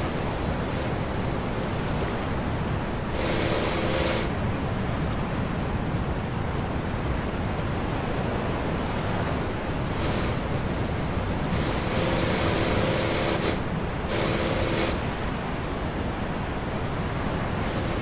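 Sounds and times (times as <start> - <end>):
boat engine drone: 0.0 - 4.9, 8.8 - 18.0
water rushing along hull: 0.0 - 18.0
wind: 0.0 - 18.0.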